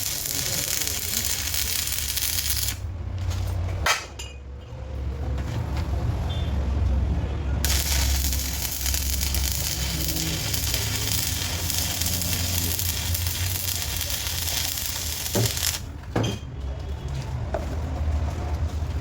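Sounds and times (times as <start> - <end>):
hissing sizzle: 0.0 - 2.8, 7.7 - 15.9.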